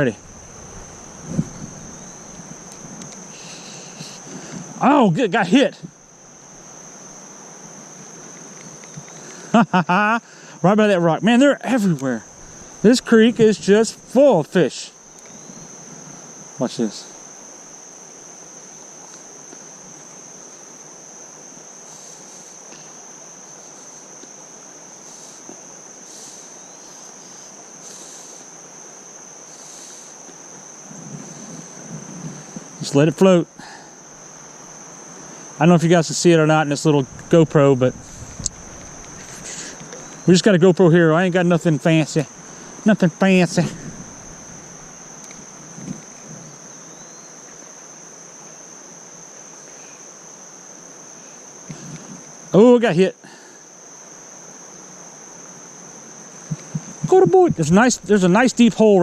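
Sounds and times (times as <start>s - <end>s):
high-pitched insect buzz: 0.0s - 59.0s
faint bird chirp: 15.1s - 15.7s, 46.4s - 47.5s
creek water running: 56.5s - 59.0s.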